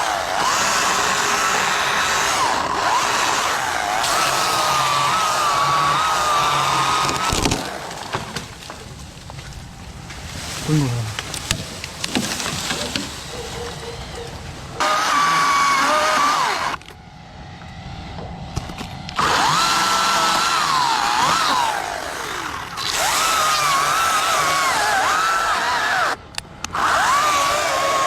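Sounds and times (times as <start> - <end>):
chainsaw running at high revs: 0.0 - 8.1, 14.8 - 16.8, 19.1 - 28.0
knocks and cracks: 6.8 - 10.2, 11.1 - 13.3.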